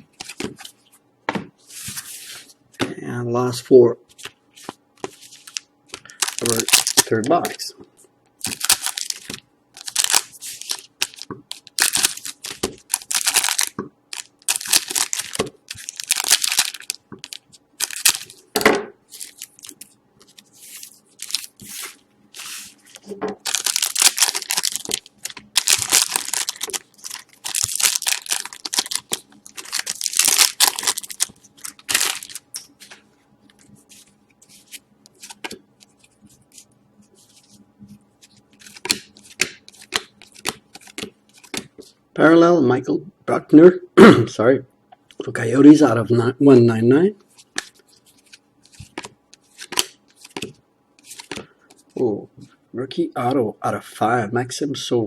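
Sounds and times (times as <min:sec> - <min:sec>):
wrappers tearing and crinkling: 0:05.4 - 0:07.6, 0:08.4 - 0:18.4, 0:20.6 - 0:33.0.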